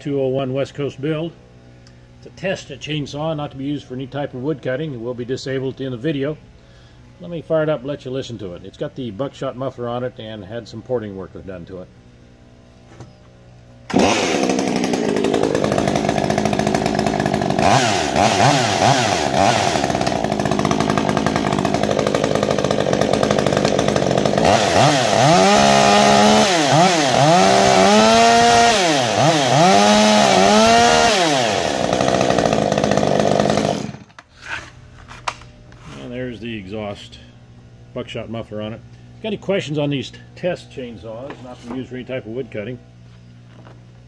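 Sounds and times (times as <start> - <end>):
chainsaw revving: 13.9 - 34.2.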